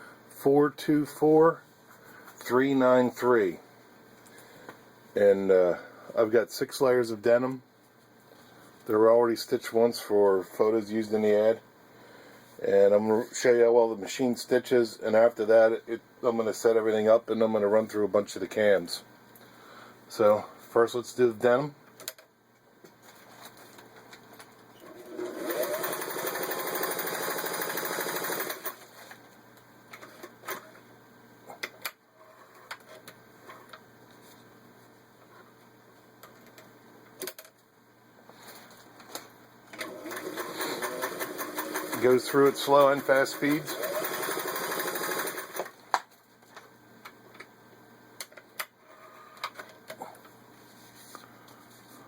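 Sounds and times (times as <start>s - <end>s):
sewing machine stitching fast: 25.0s - 28.8s, 39.8s - 45.7s.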